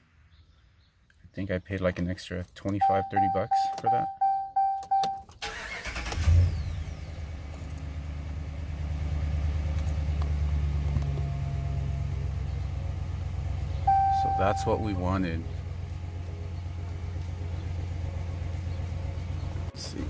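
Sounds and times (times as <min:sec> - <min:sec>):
dashboard warning chime pinging: 0:02.8 - 0:05.3, 0:13.9 - 0:15.2
engine cranking and starting: 0:05.3 - 0:08.0
engine idling: 0:05.4 - 0:20.0.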